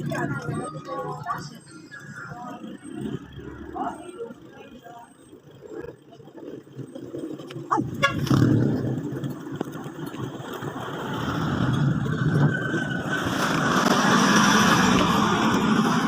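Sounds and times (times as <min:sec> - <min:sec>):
engine rumble: 0:00.0 - 0:16.0
road traffic: 0:00.0 - 0:16.0.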